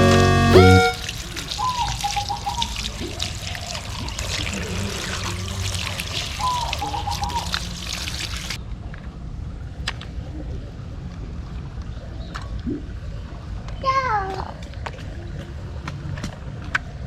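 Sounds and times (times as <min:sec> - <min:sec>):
high chirps: 0:00.0 - 0:01.1
water trickling and pouring: 0:00.0 - 0:08.6.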